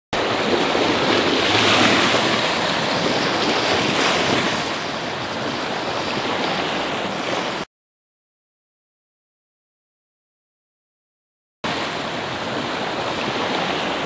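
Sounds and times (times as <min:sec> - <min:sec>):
wind: 0:00.1 - 0:07.7, 0:11.6 - 0:14.0
open water: 0:00.2 - 0:07.7, 0:11.7 - 0:14.0.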